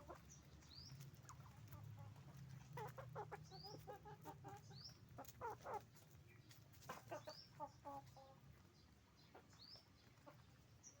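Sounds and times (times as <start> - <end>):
hens clucking: 1.3 - 6.1.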